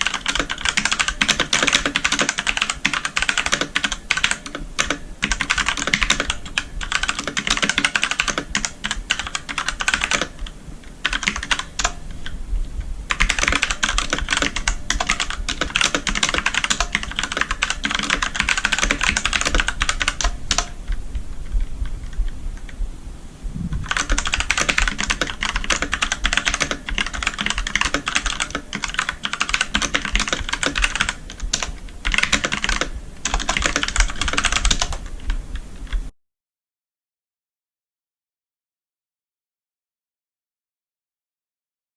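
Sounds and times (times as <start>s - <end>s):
mechanical keyboard typing: 0.0s - 12.0s, 13.1s - 20.8s, 23.8s - 35.4s.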